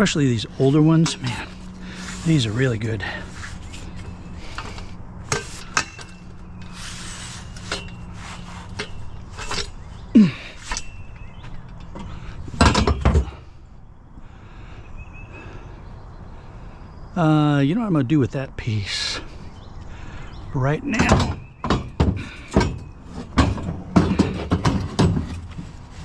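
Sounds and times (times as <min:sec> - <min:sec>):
metal tubing knocking and clanking: 0:08.7 - 0:13.4, 0:20.9 - 0:25.8.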